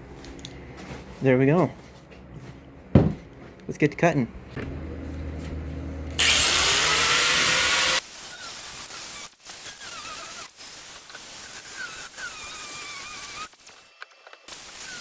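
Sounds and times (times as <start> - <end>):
power tool motor whining: 6.2 - 15.0.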